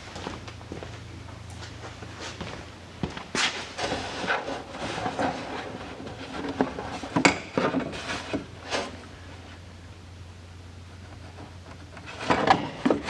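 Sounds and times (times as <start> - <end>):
cardboard rubbing and scraping: 3.4 - 9.2.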